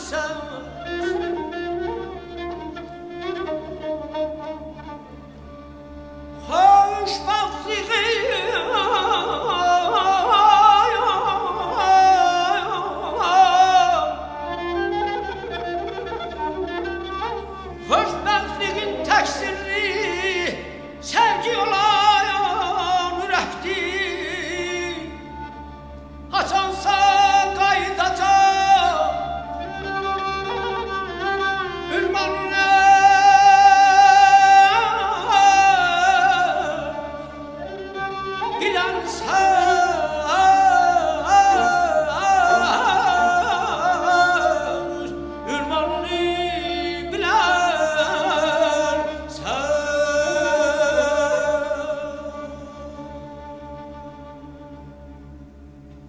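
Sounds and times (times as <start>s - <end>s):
orchestral accompaniment: 0.0s - 56.0s
man singing with trills: 26.4s - 29.3s, 38.6s - 53.6s.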